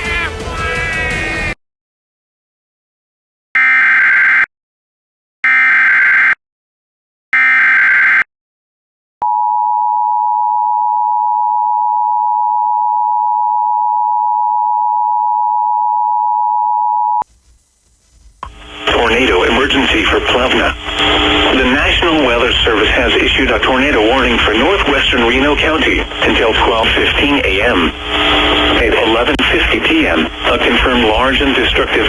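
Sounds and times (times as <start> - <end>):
digital data tone bursts: 18.8 - 32.0.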